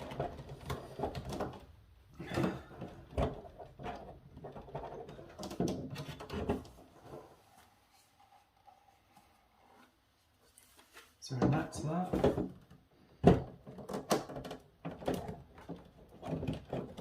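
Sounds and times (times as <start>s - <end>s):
plastic toy parts knocking and clicking: 0.0s - 1.7s, 12.1s - 17.0s.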